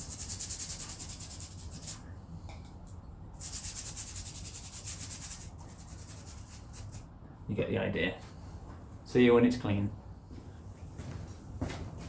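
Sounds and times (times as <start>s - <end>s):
brush scrubbing a chain: 0.0s - 2.0s, 3.4s - 7.1s.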